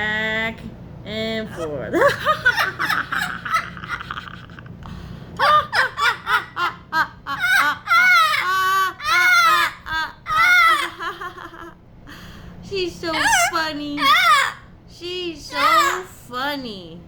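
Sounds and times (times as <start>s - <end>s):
parrot calling: 5.4s - 11.6s, 13.0s - 14.8s, 15.5s - 16.2s.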